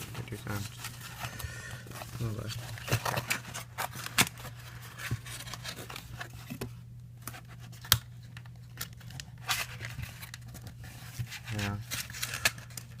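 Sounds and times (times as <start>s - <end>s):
cardboard crackling and scraping: 1.9s - 7.9s, 9.0s - 13.0s.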